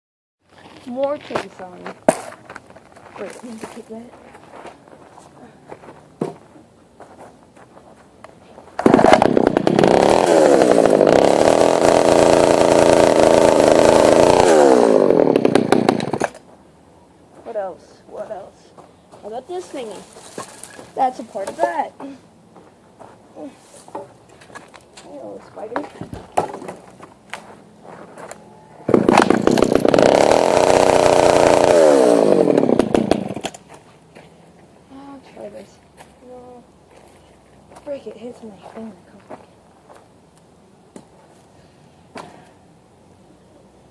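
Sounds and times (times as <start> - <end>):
chainsaw running: 8.8 - 16.4, 28.9 - 33.5.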